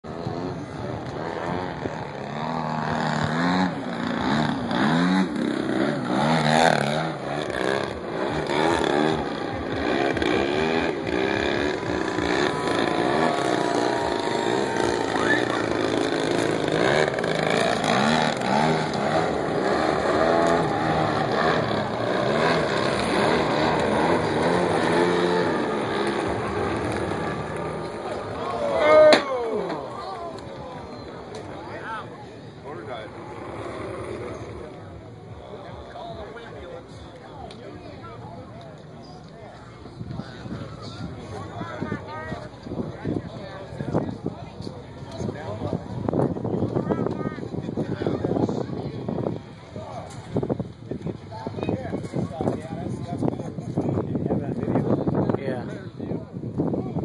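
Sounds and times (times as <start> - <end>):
model airplane engine in flight: 0.1 - 28.7, 29.9 - 37.1.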